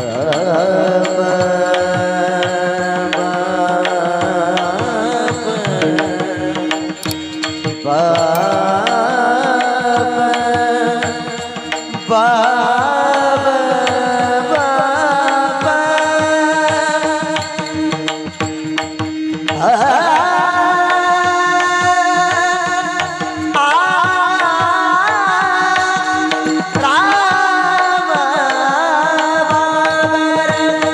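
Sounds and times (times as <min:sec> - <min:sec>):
person singing devotional song: 0:00.0 - 0:30.9
hand drum beat: 0:07.0 - 0:08.6.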